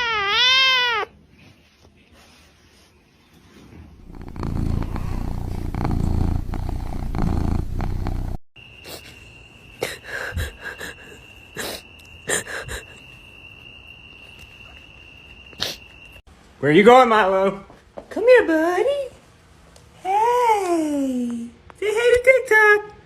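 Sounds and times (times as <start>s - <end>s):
cat purring: 4.0s - 8.4s.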